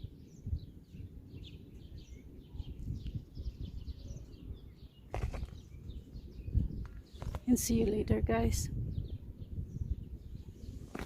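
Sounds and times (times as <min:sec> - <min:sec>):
songbirds chirping and twittering: 0:00.0 - 0:11.0.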